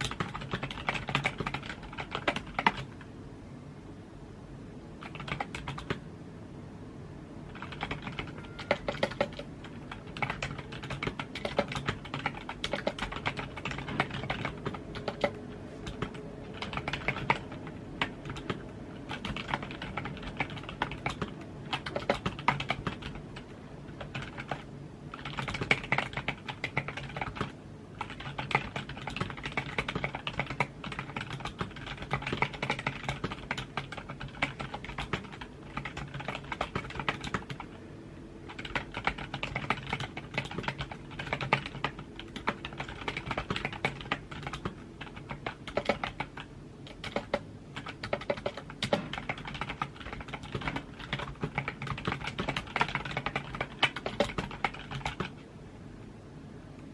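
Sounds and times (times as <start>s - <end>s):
computer keyboard typing: 0.0s - 3.1s, 5.0s - 6.0s, 7.5s - 37.8s, 38.4s - 55.5s.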